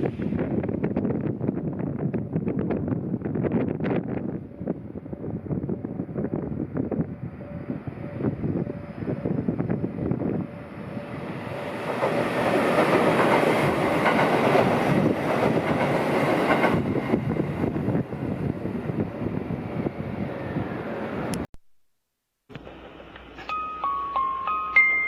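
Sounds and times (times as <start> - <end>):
train wheels rolling on rails: 9.0 - 21.3, 22.5 - 23.5.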